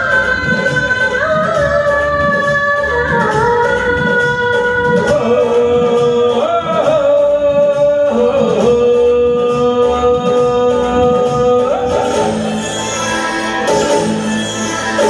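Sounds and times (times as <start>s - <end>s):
instrumental backing music: 0.0s - 15.0s
person singing long notes: 4.6s - 12.6s.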